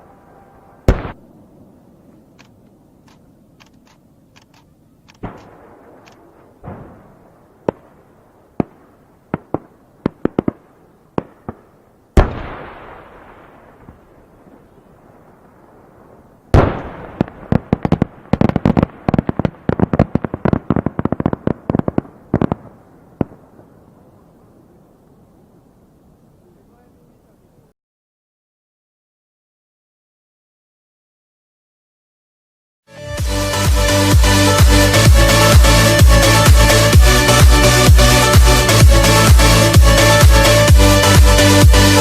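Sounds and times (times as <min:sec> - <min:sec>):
fireworks bangs and booms: 0:00.0 - 0:02.6, 0:05.2 - 0:24.8
crackling bangs: 0:00.8 - 0:24.7.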